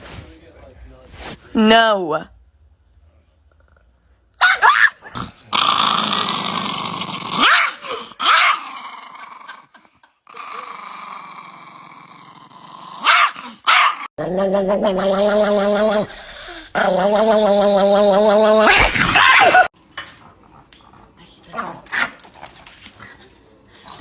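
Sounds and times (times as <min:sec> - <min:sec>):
dog growling: 0:05.1 - 0:09.7, 0:10.3 - 0:19.1.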